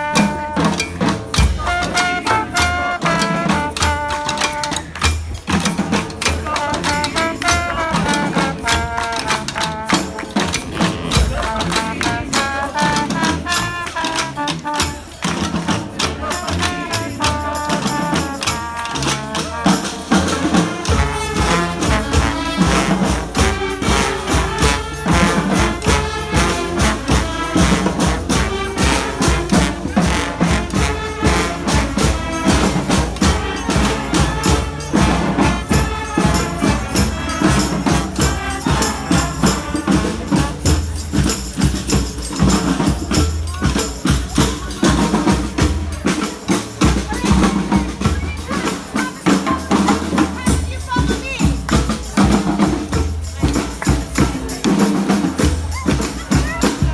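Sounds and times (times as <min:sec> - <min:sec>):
deep low brass notes: 0:00.0 - 0:41.0
brass band playing salsa: 0:00.0 - 0:56.9.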